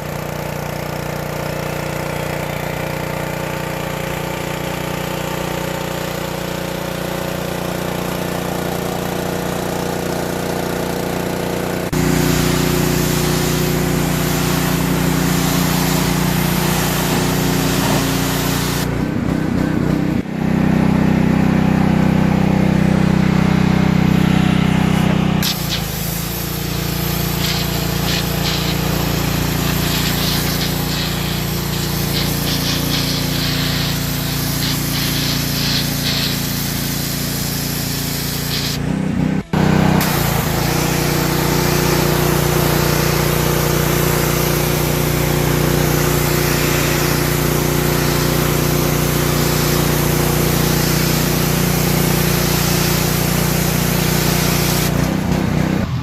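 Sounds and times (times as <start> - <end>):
pressure washer engine droning: 0.0 - 56.0
high-pressure water jet hissing: 11.9 - 19.0, 24.8 - 39.0, 40.0 - 55.8.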